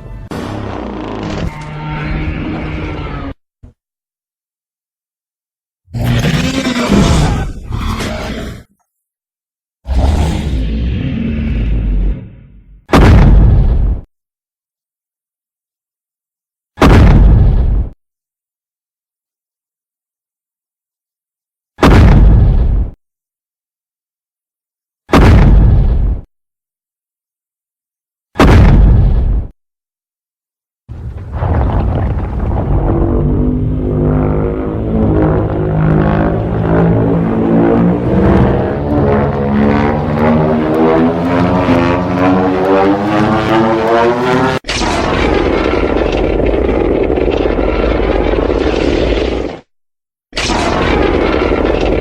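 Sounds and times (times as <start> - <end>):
long loud monster roar: 0.3 - 3.4, 5.9 - 8.7, 9.9 - 12.7, 31.4 - 49.6
explosion-like blast with rumble: 12.9 - 14.1, 16.8 - 18.0, 21.8 - 23.0, 25.1 - 26.2, 28.4 - 29.5, 30.9 - 40.1, 44.6 - 49.6, 50.4 - 52.0.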